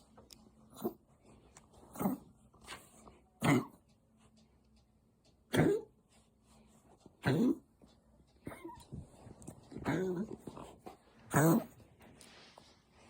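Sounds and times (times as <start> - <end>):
pet animal coughing: 3.4 - 3.9, 5.4 - 6.0, 7.2 - 7.7, 9.7 - 11.9.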